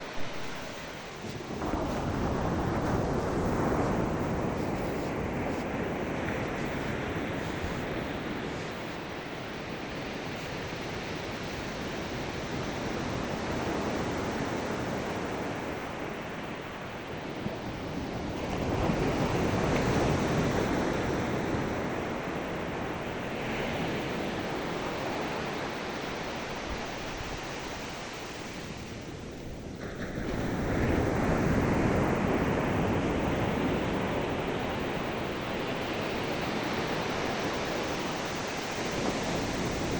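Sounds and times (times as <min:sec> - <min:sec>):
waves breaking on shore: 0:00.0 - 0:39.9.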